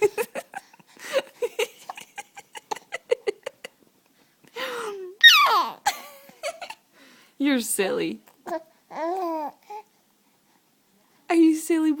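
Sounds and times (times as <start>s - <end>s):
baby hiccuping: 5.2s - 5.9s
baby breathy vocal sound: 8.4s - 10.7s.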